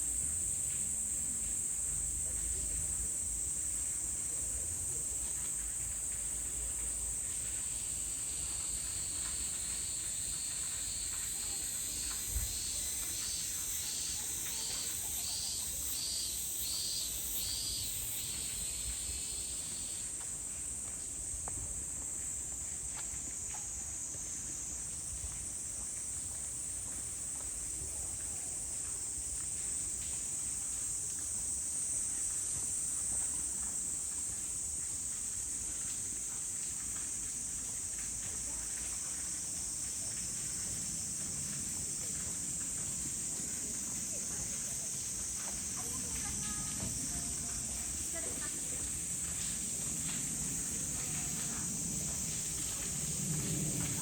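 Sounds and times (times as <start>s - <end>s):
insect chorus: 0.0s - 54.0s
pulsing insect call: 7.6s - 20.2s, 37.1s - 54.0s.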